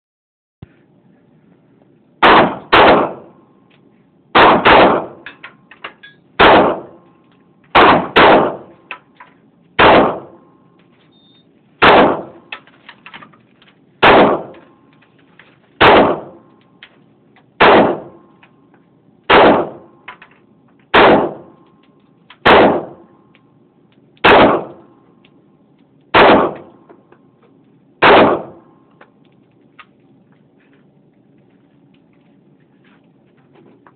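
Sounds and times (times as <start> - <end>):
handgun shots: 2.2 - 3.3, 4.4 - 5.3, 6.4 - 7.0, 7.7 - 8.7, 9.8 - 10.4, 11.8 - 12.6, 14.0 - 14.6, 15.8 - 16.4, 17.6 - 18.2, 19.3 - 19.9, 20.9 - 21.6, 22.4 - 23.0, 24.2 - 24.8, 26.2 - 26.8, 28.0 - 28.6.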